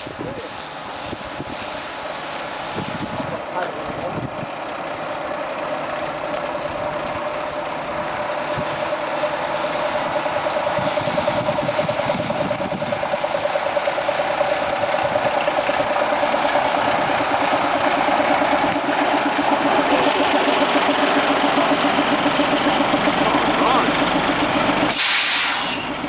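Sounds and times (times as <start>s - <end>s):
engine running with fast pulse: 7.3s - 25.0s.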